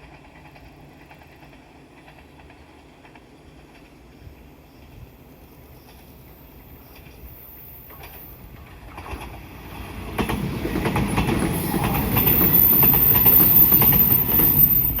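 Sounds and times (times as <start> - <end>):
train passing: 0.0 - 15.0
wheels clattering over rail joints: 6.8 - 15.0.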